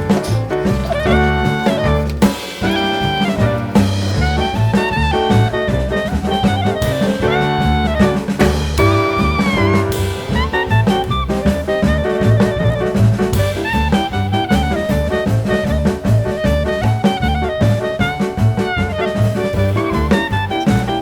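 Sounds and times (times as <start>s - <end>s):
upbeat jazz music: 0.0s - 21.0s.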